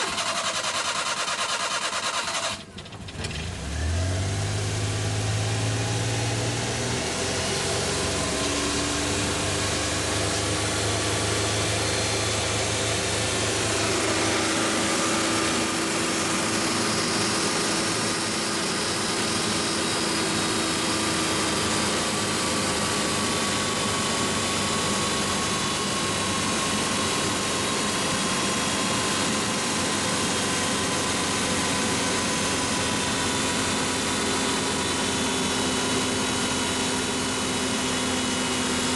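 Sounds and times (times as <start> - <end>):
car engine idling: 9.8 - 38.6.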